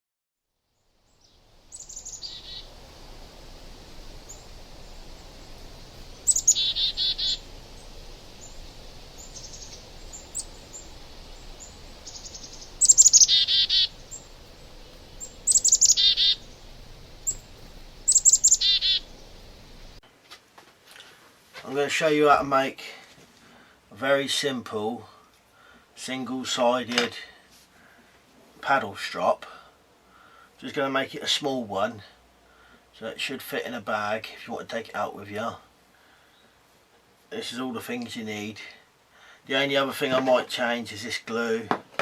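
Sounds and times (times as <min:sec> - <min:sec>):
songbird singing: 0:00.7 - 0:20.0
faint bird chirps: 0:01.0 - 0:20.0.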